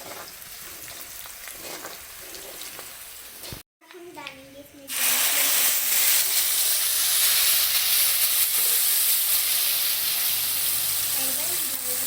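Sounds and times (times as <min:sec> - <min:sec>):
oil sizzling in a frying pan: 0:04.2 - 0:12.0.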